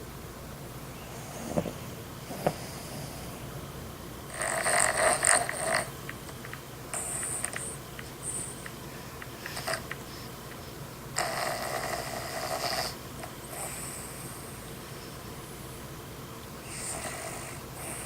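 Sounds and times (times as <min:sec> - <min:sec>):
person snoring: 0:04.3 - 0:05.9, 0:11.2 - 0:14.0
faint breathing: 0:06.9 - 0:10.8.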